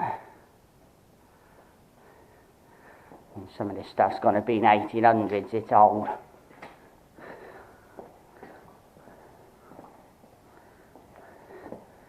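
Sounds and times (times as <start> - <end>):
footsteps on stone floor: 7.9 - 12.0.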